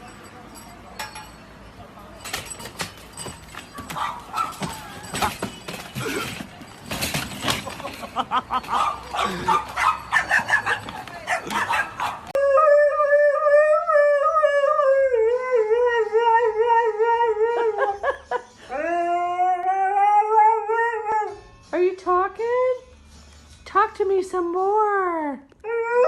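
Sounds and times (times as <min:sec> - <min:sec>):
dog barking and yipping: 0:03.8 - 0:05.4, 0:08.5 - 0:12.4
dog howling: 0:11.4 - 0:17.7, 0:18.8 - 0:21.4, 0:25.6 - 0:26.0.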